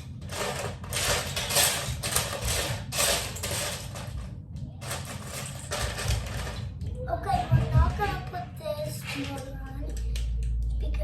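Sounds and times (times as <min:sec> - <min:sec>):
plastic bricks clattering: 0:00.0 - 0:06.7.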